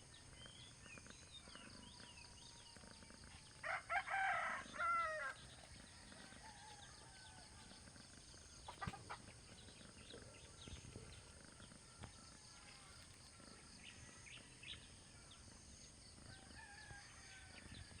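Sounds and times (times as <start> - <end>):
chickens clucking: 7.6 - 11.7.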